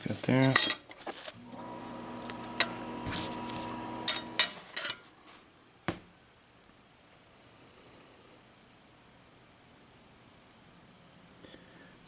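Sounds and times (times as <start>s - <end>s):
metal tools clinking: 0.4s - 1.4s, 2.6s - 5.0s
steady low hum: 1.4s - 5.0s.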